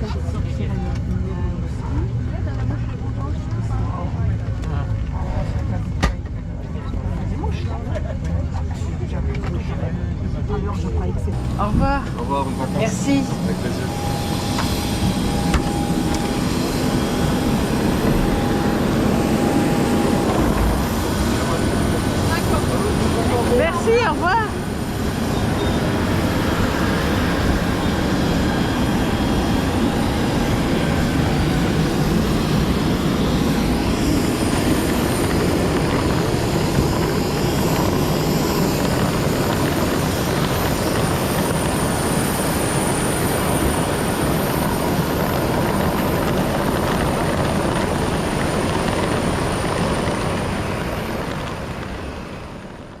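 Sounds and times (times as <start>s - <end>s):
vehicle engines running: 0.0s - 35.3s
aircraft engines running: 0.0s - 53.0s.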